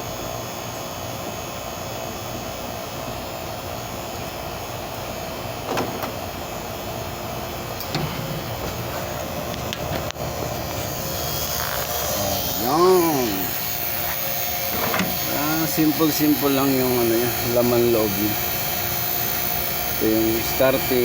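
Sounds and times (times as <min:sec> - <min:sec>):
motor hum: 0:04.8 - 0:21.0.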